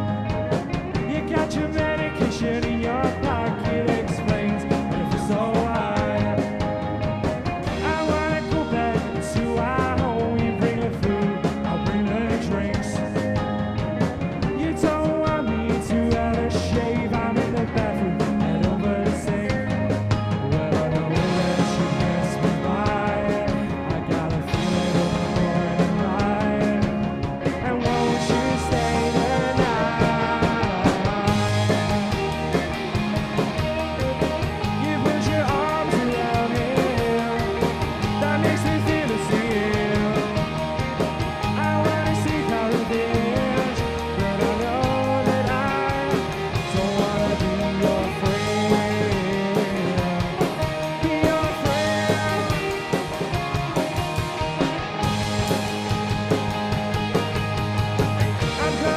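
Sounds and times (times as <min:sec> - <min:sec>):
repeating bass line: 0:00.0 - 0:58.9
rock band playing: 0:00.0 - 0:58.9.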